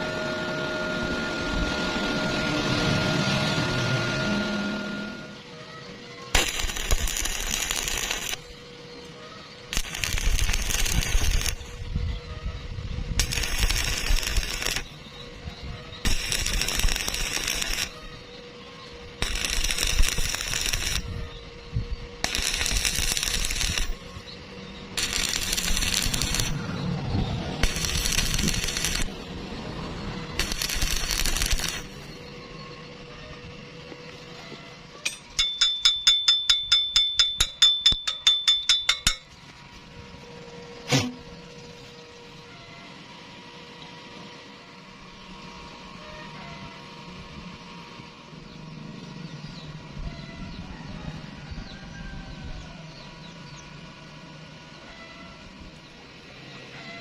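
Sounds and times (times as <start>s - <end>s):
arc welding crackling: 6.3s - 32.4s
hammer striking ringing steel: 35.0s - 39.4s.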